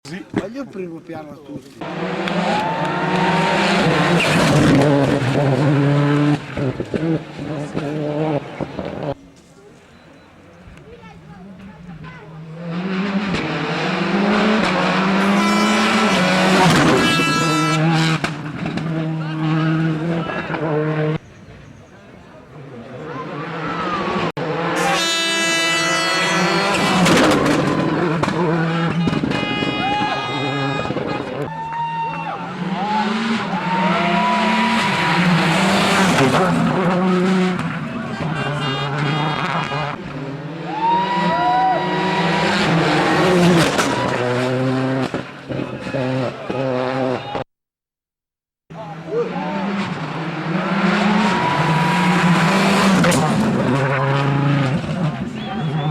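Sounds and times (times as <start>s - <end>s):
rally car engine passing: 1.7s - 9.4s, 10.3s - 47.4s, 48.7s - 55.9s
rally car engine running hard: 48.7s - 55.9s.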